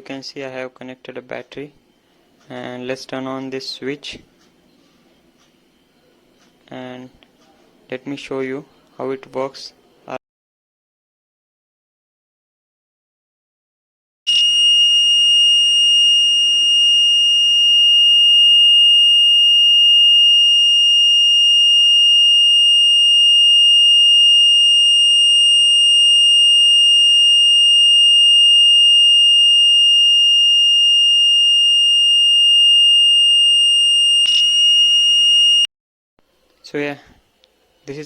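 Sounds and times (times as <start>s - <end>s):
high-pitched alarm buzzer tone: 14.3s - 35.7s.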